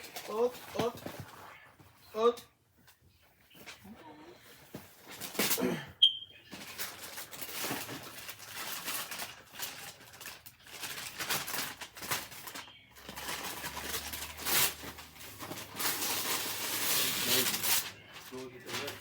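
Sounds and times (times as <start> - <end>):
wrapping paper rustling and tearing: 6.5 - 19.0.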